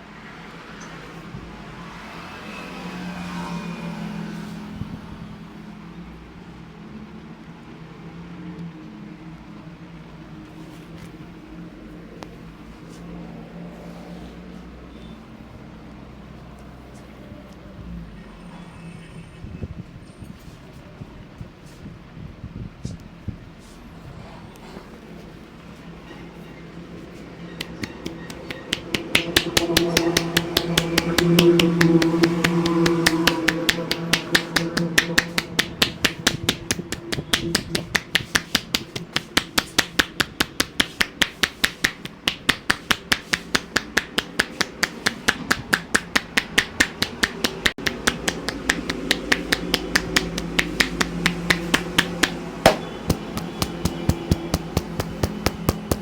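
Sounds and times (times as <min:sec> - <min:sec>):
hands slapping a head: 0:27.6 - 0:56.0.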